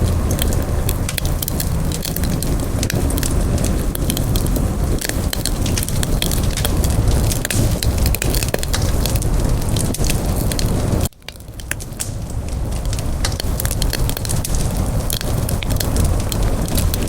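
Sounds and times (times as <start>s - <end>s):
low rumble of burning: 0.0s - 17.0s
wood fire crackling: 0.0s - 17.0s.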